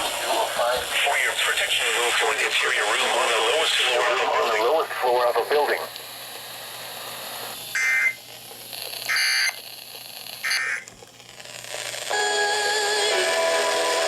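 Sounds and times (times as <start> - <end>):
radio hiss: 0.0 - 10.9
digital data bursts: 9.0 - 9.6, 10.3 - 10.9.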